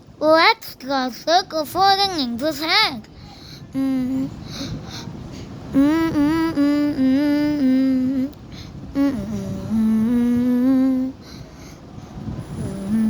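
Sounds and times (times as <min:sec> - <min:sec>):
person humming a tune: 0:03.6 - 0:05.0, 0:05.7 - 0:08.4, 0:09.0 - 0:11.3, 0:12.5 - 0:13.0.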